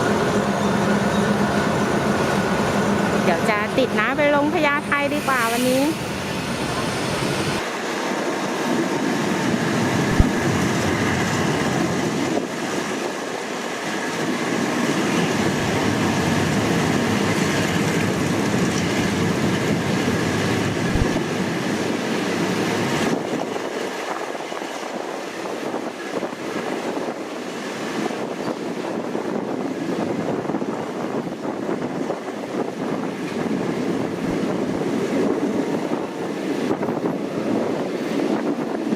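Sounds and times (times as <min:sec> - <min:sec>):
train wheels clattering on rails: 0:08.4 - 0:38.9.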